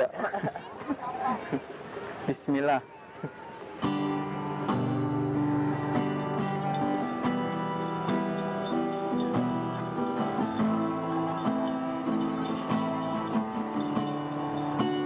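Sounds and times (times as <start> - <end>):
acoustic guitar strumming: 3.8 - 15.0.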